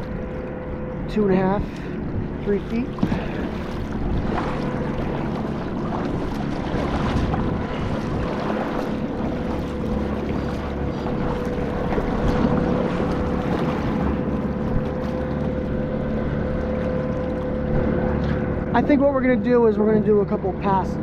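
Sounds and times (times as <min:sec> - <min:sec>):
low rumble: 0:00.0 - 0:21.0
water wash: 0:00.0 - 0:21.0
wind noise: 0:01.0 - 0:15.2.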